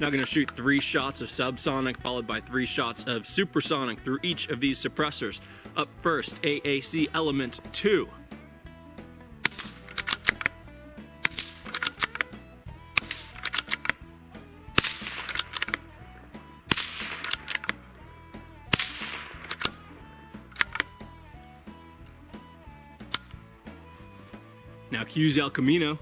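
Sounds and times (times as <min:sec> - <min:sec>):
background music: 0:00.0 - 0:26.0
suppressed pistol shots: 0:09.4 - 0:10.5, 0:11.2 - 0:12.4, 0:13.0 - 0:14.0, 0:14.7 - 0:15.9, 0:16.7 - 0:17.9, 0:18.7 - 0:20.9
gun action clicks: 0:09.4 - 0:10.6, 0:11.2 - 0:12.4, 0:13.0 - 0:14.0, 0:14.8 - 0:15.9, 0:16.7 - 0:17.9, 0:18.7 - 0:19.8, 0:20.5 - 0:21.0, 0:23.1 - 0:23.4.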